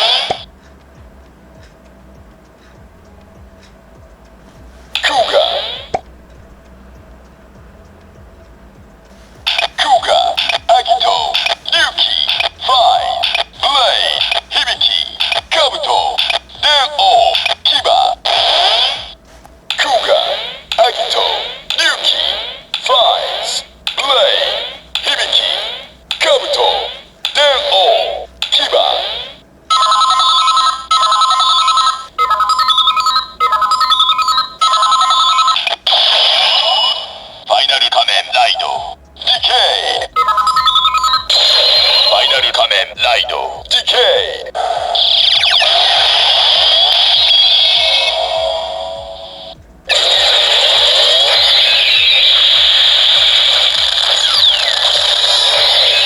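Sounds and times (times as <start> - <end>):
harsh buzzing electronic toy sound: 0.0 - 0.5, 4.9 - 6.0, 9.4 - 56.0
electronic toy jingle: 29.7 - 37.0, 39.5 - 42.6.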